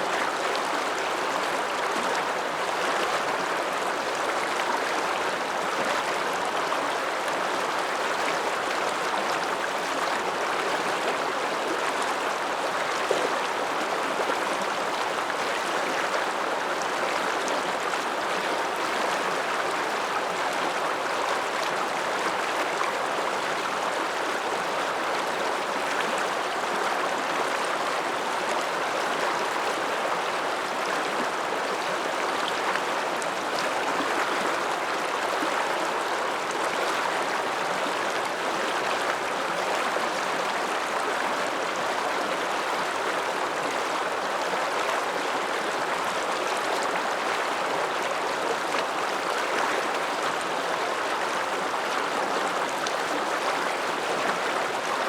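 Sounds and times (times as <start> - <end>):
mountain river rushing: 0.0 - 55.0.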